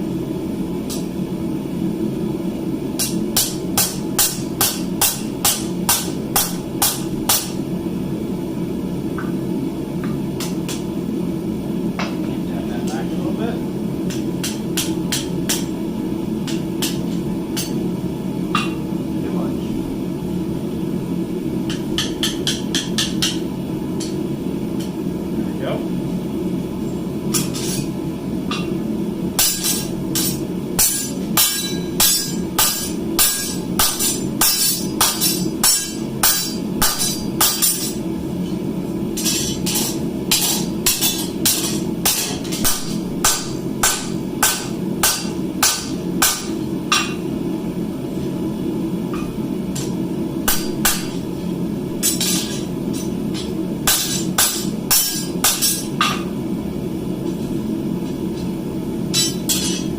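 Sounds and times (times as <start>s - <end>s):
hammer striking steel on anvil: 3.0s - 7.6s, 14.1s - 15.8s, 16.4s - 17.8s, 18.6s - 18.8s, 21.7s - 24.2s, 27.3s - 27.9s, 29.4s - 38.0s, 39.2s - 47.3s, 49.1s - 51.2s, 52.0s - 56.3s, 59.1s - 59.9s.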